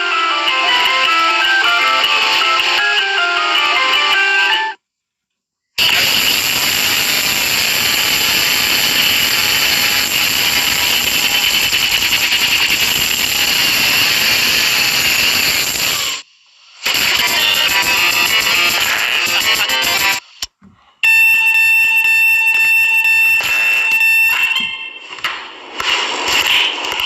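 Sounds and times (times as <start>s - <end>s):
alarm clock static hiss: 5.8s - 25.2s.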